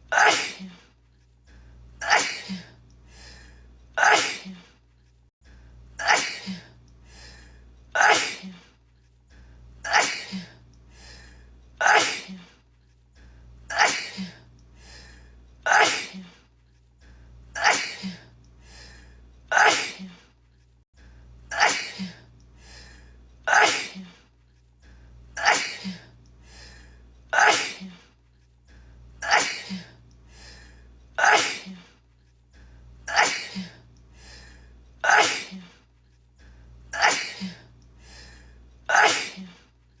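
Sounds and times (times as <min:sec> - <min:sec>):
woman sneezing: 0:00.1 - 0:00.8, 0:02.0 - 0:02.6, 0:04.0 - 0:04.6, 0:06.0 - 0:06.6, 0:08.0 - 0:08.6, 0:11.8 - 0:12.5, 0:13.7 - 0:14.4, 0:15.7 - 0:16.3, 0:17.6 - 0:18.2, 0:19.5 - 0:20.2, 0:21.5 - 0:22.2, 0:23.5 - 0:24.2, 0:25.4 - 0:26.0, 0:27.4 - 0:28.0, 0:29.2 - 0:29.9, 0:31.2 - 0:31.8, 0:33.1 - 0:33.8, 0:35.0 - 0:35.7, 0:37.0 - 0:37.6, 0:38.9 - 0:39.6.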